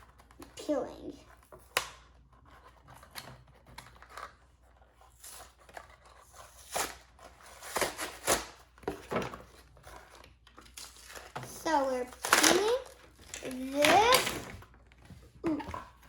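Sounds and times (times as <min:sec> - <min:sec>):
plastic film peeling and crackling: 0:09.6 - 0:15.5.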